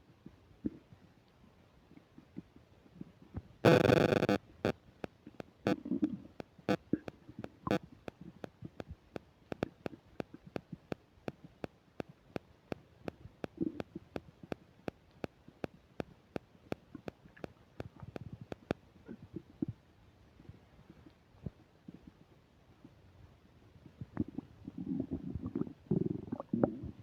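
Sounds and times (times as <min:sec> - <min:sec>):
microphone static crackle: 0:03.6 - 0:18.8
stomach gurgling: 0:24.0 - 0:27.0.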